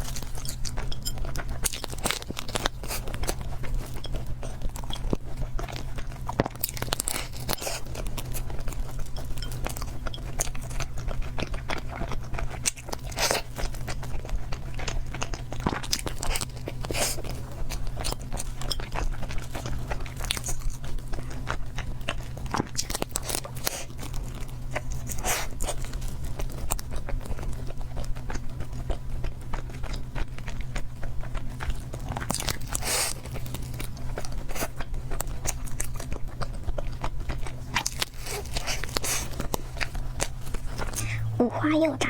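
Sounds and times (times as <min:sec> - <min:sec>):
person chewing food: 0:00.0 - 0:41.4
low hum: 0:40.8 - 0:42.0.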